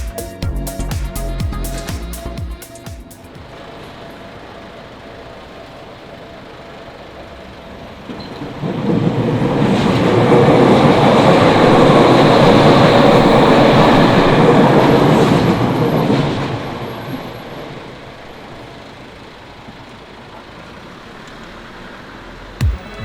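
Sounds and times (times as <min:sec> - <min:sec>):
train wheel and running noise: 0:03.2 - 0:21.4.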